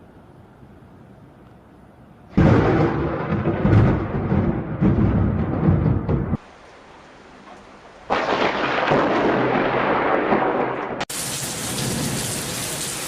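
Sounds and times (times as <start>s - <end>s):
thunder crash: 2.3s - 6.4s, 8.0s - 12.5s
heavy rain: 5.9s - 13.0s.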